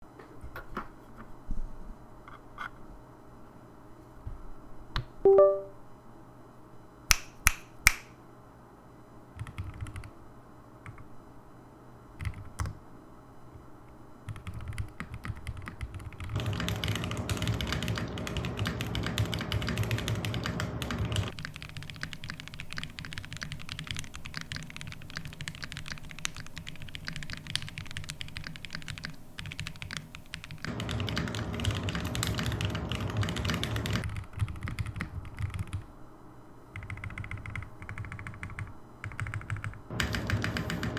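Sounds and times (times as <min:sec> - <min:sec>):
mechanical keyboard typing: 0:09.4 - 0:10.1, 0:12.2 - 0:12.8, 0:14.3 - 0:35.8, 0:36.8 - 0:40.9.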